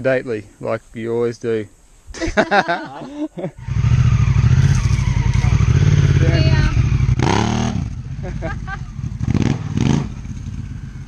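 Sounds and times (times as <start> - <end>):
motorcycle engine running: 3.6 - 11.0.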